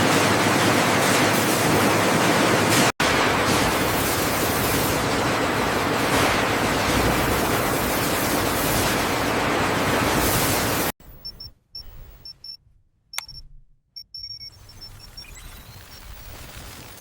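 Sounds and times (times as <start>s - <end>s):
loud rushing hiss: 3.0s - 10.9s
short high electronic beeps: 11.1s - 12.6s, 13.2s - 16.5s
sharp click: 13.2s - 13.6s.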